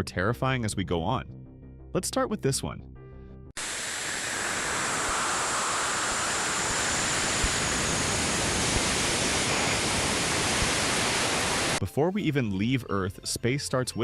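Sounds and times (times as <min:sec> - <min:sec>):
static-like hiss: 0:03.6 - 0:11.8.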